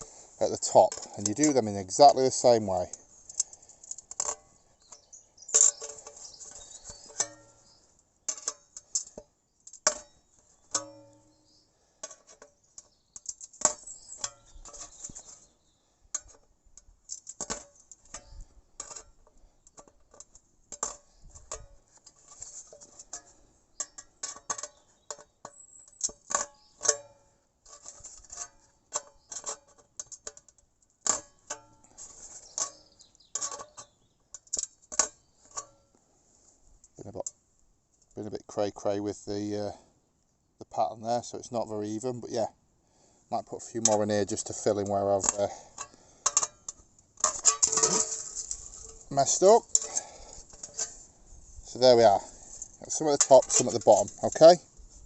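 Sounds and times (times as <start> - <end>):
can opener clanking on metal tin: 47.2 - 51.0, 52.9 - 54.6.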